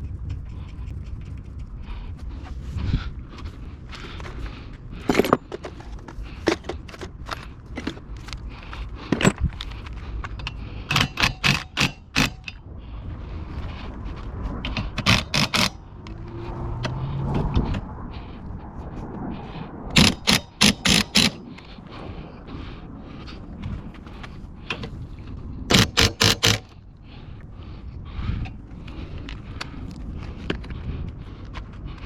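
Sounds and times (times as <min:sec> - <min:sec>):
sharp clicks and knocks: 0:09.1 - 0:12.6, 0:14.6 - 0:15.8, 0:20.0 - 0:21.4, 0:25.7 - 0:26.8.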